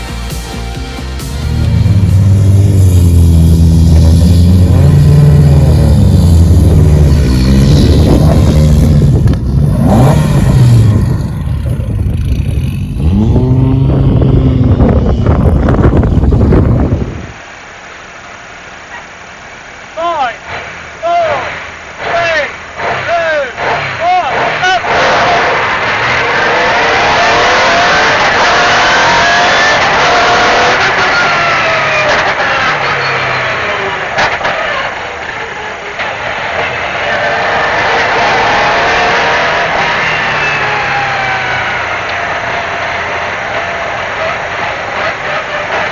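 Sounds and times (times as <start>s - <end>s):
rally car engine revving: 1.2s - 17.4s, 20.3s - 45.9s.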